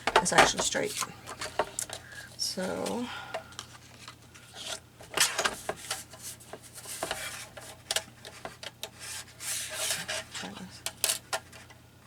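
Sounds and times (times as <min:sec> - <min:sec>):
paper rustling and sliding: 0:09.0 - 0:10.3.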